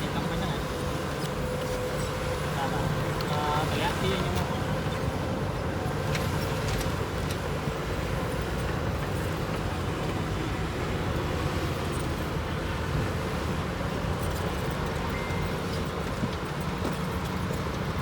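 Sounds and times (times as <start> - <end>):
diesel engine low rumble: 0.0 - 18.0.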